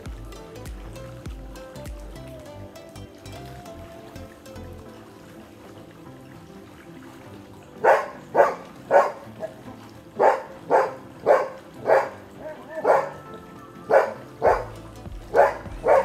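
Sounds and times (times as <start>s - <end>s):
dog barking: 7.8s - 9.6s, 10.2s - 13.2s, 13.9s - 14.7s, 15.3s - 16.0s.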